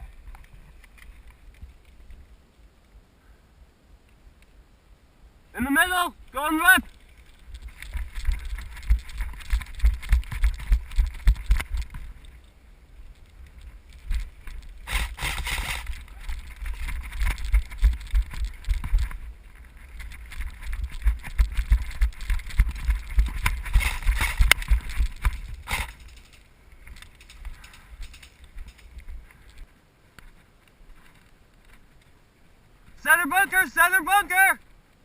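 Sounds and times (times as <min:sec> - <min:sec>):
rustling: 0:06.2 - 0:33.0.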